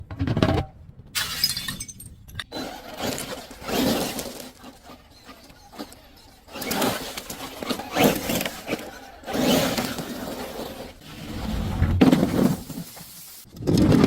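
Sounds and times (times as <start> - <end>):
glass crunching and shattering: 1.2 - 2.2.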